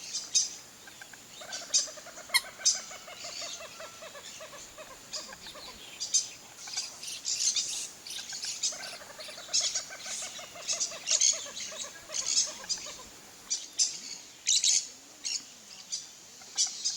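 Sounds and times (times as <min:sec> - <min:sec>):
birds chirping: 0:00.0 - 0:16.9
bird clucking: 0:00.8 - 0:13.5.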